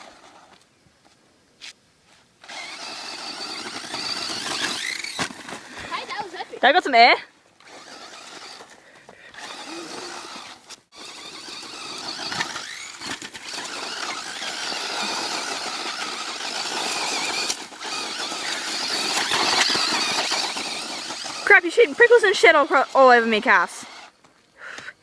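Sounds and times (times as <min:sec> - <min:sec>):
remote control car motor whining: 0:00.0 - 0:00.6, 0:02.4 - 0:06.6, 0:07.5 - 0:24.3.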